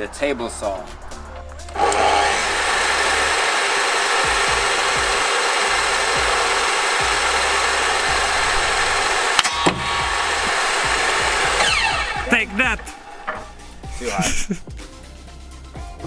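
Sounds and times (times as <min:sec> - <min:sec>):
table saw running: 0:01.6 - 0:14.7.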